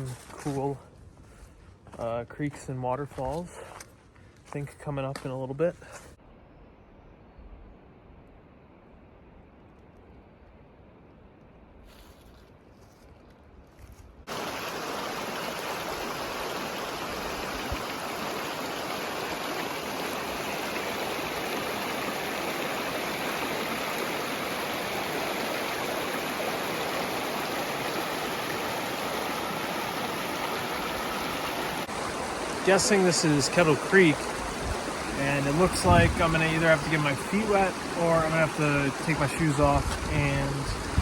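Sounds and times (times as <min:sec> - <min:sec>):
water rushing over rocks: 0:14.3 - 0:41.0.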